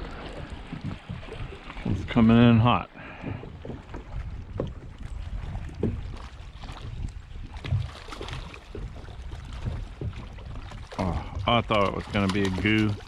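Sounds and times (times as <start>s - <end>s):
wind rumble on microphone: 0.0s - 2.6s, 3.2s - 13.0s
dull knocks against boat: 5.6s - 6.3s.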